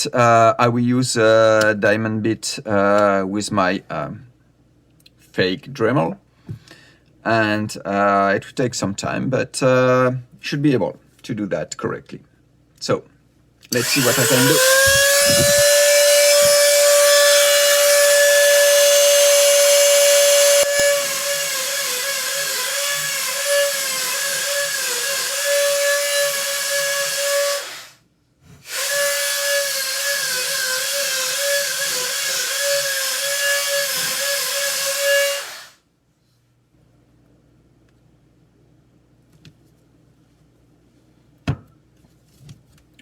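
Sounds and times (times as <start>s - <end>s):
rotary tool whining: 13.7s - 28.0s, 28.7s - 35.8s
rotary tool grinding metal: 13.8s - 27.9s, 28.7s - 35.7s.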